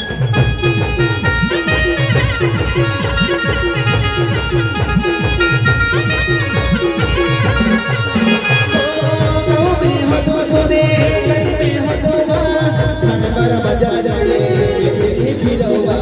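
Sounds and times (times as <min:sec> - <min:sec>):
fast drum beat: 0:00.0 - 0:16.0.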